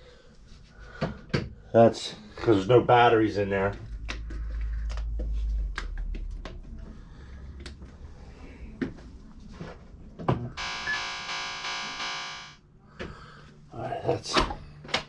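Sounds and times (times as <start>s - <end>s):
synthesized tone: 10.6s - 12.6s.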